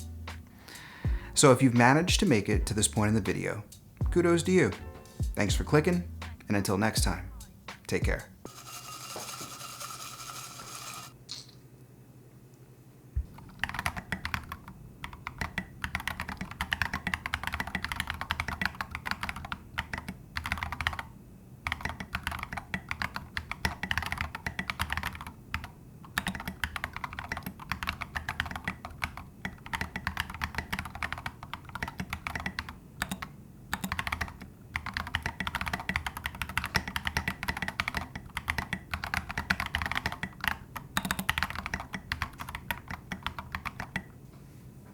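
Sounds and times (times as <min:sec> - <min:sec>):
mechanical keyboard typing: 0:13.4 - 0:44.1.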